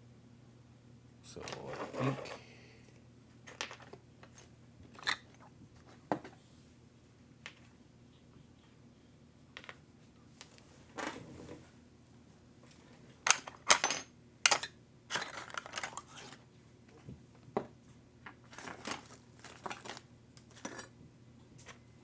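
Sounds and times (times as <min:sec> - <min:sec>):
metal parts clinking on hard surface: 0:13.3 - 0:16.0.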